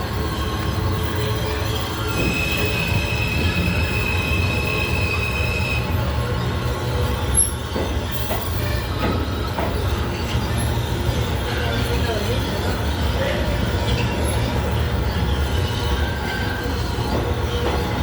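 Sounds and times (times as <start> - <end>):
high wheel squeal: 0.0 - 18.0
subway train rumble: 0.0 - 18.0.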